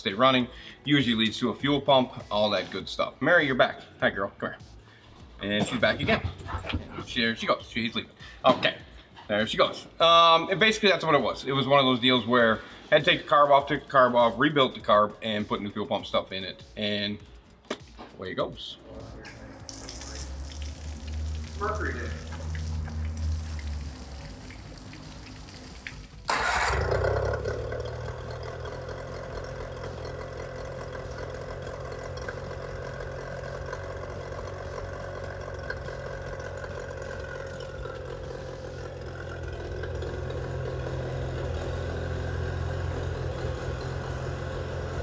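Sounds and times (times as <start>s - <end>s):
outboard motor idling: 5.6s - 7.4s, 19.3s - 45.0s.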